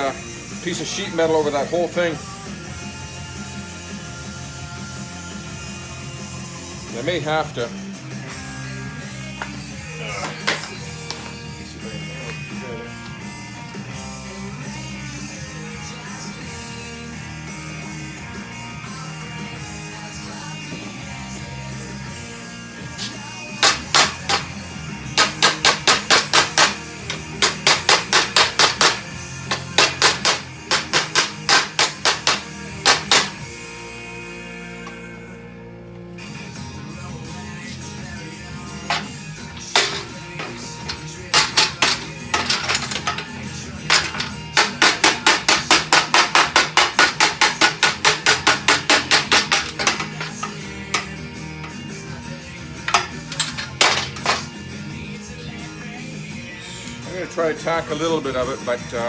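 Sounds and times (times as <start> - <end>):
radio playing music: 0.0 - 59.0
hammer striking metal: 23.6 - 33.4, 38.9 - 51.8, 52.8 - 54.6.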